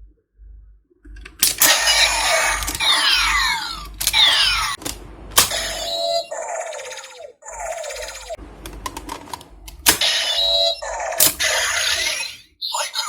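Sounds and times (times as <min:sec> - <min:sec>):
toy electronic sound effects: 0:01.5 - 0:04.8, 0:05.4 - 0:08.4, 0:09.9 - 0:13.0.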